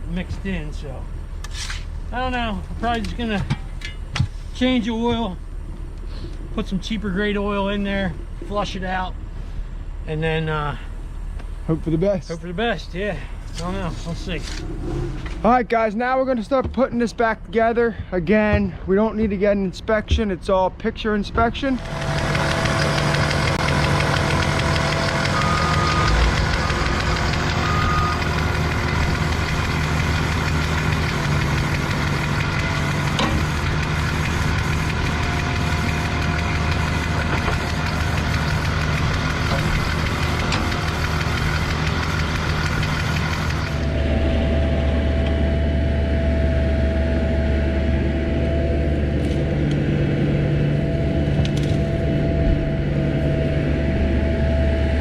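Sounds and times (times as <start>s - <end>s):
diesel excavator engine running: 0.0s - 55.0s
noisy backfilling work: 21.4s - 45.1s.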